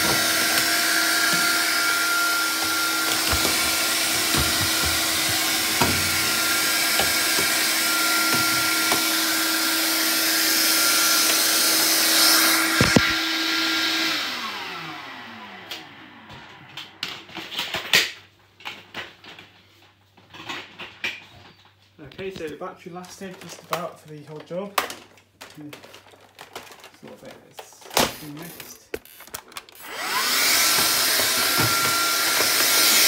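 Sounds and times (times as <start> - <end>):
vacuum cleaner motor running: 0.0 - 16.9, 29.8 - 33.0.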